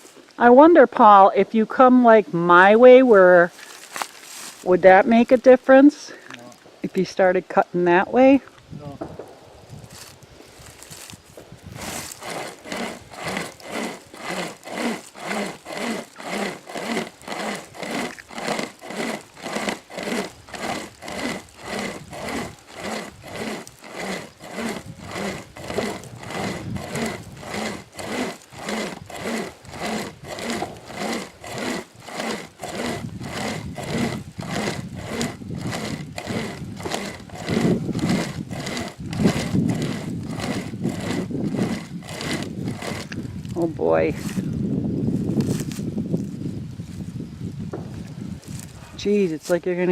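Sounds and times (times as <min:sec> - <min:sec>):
pocket chainsaw rasping through wood: 0:03.1 - 0:05.6, 0:10.0 - 0:44.5.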